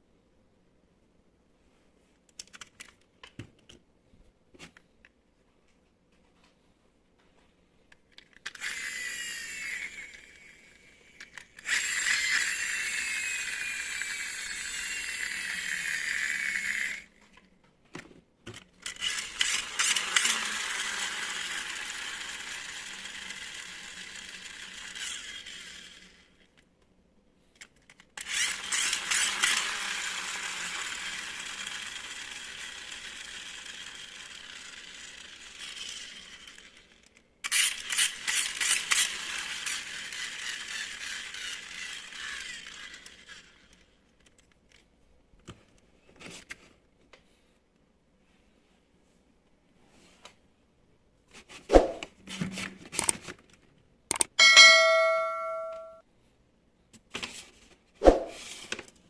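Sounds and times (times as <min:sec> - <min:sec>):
toy car motor whining: 0:08.4 - 0:17.2, 0:18.8 - 0:26.5, 0:28.2 - 0:44.4.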